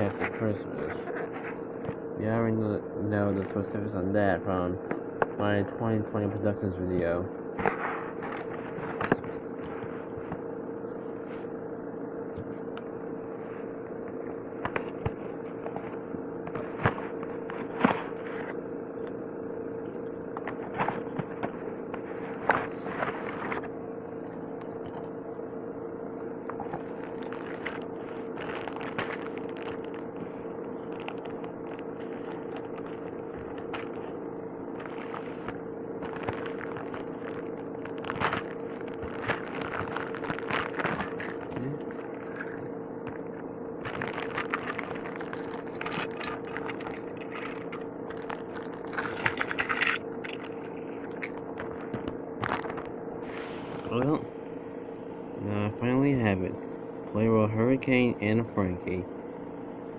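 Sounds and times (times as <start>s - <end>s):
low hum: 0.0s - 59.9s
plastic and cardboard crinkling: 26.5s - 52.9s.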